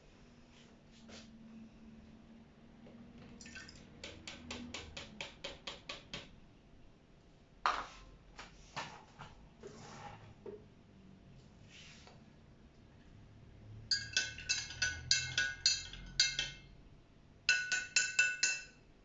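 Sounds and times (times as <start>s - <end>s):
kitchenware clicking: 13.9s - 16.7s
ringing clink: 13.9s - 16.8s.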